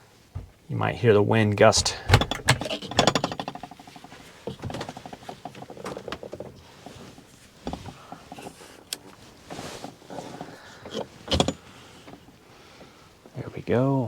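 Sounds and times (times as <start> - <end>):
door latch clicking and rattling: 1.8 - 3.8, 11.3 - 11.6.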